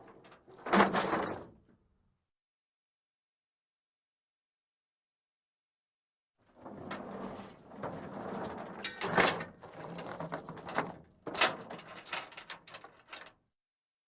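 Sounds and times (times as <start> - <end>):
chain rattling and scraping on metal: 0.1 - 1.5, 6.6 - 13.3.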